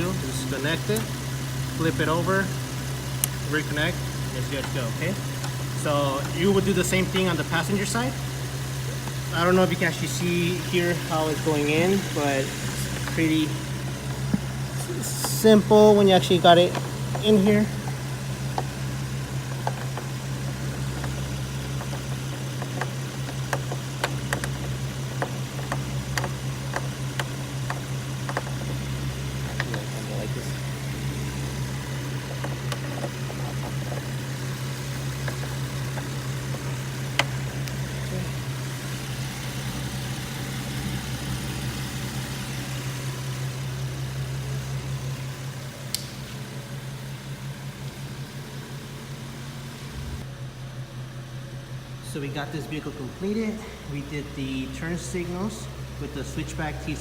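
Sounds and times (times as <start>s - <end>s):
car engine idling: 0.0s - 57.0s
light clicks: 45.9s - 46.4s.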